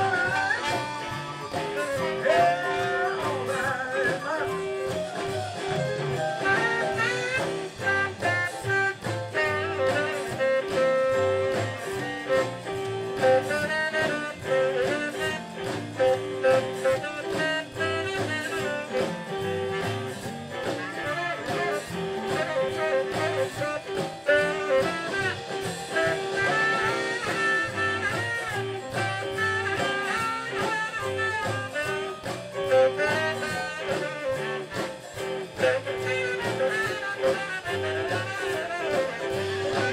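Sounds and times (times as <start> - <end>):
lead guitar solo: 0.0 - 5.3
blues band playing: 0.0 - 39.9.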